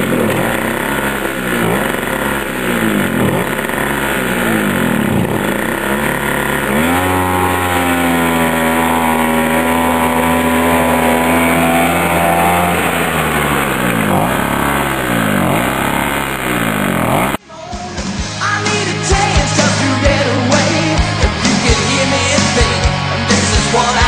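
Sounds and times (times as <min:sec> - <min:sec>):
snowmobile engine revving: 0:00.0 - 0:17.4.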